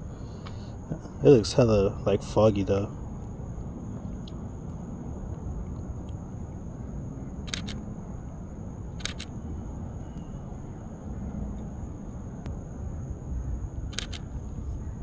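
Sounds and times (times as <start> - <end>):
steady low rumble: 0.0 - 15.0
camera shutter clicks: 7.4 - 7.9, 9.0 - 9.4, 13.9 - 14.3.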